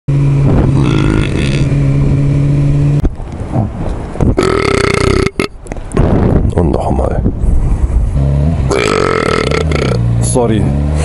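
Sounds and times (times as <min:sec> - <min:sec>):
motorcycle riding noise: 0:00.1 - 0:06.5, 0:07.2 - 0:11.0
man burping: 0:00.7 - 0:01.8, 0:04.3 - 0:05.7, 0:08.7 - 0:10.0.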